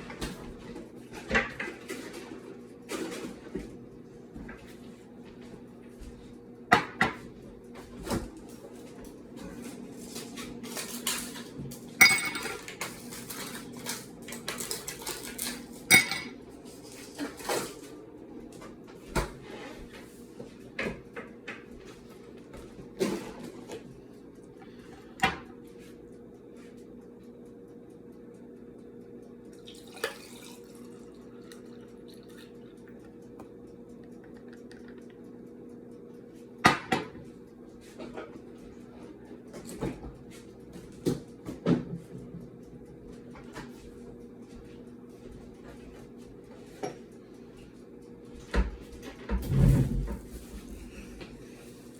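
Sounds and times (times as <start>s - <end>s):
tableware clinking: 12.0s - 12.8s, 14.6s - 16.4s
steady low hum: 17.7s - 51.9s.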